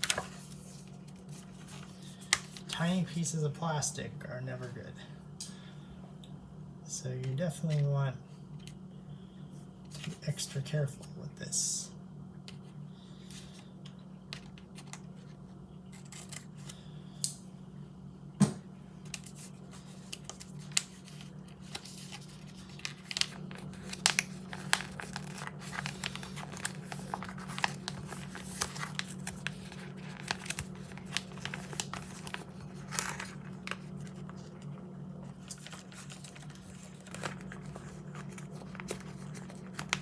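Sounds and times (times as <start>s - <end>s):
steady low hum: 0.0s - 40.0s
plastic bag crinkling: 19.3s - 40.0s.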